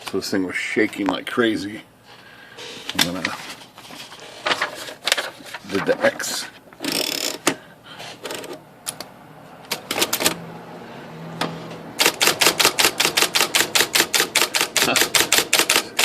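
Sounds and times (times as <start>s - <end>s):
electric typewriter keystrokes: 9.7s - 10.4s, 12.0s - 16.0s.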